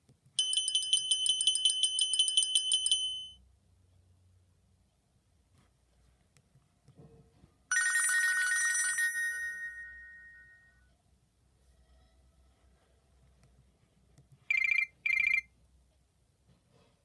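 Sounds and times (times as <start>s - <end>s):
phone ringing trill: 0.4s - 3.4s, 7.7s - 10.8s, 14.5s - 15.5s.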